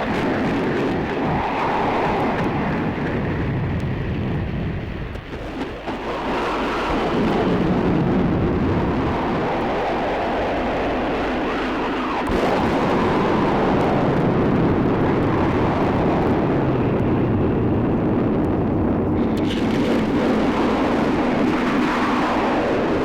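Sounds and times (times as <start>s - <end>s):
rumbling guitar noise wash: 0.0s - 23.0s.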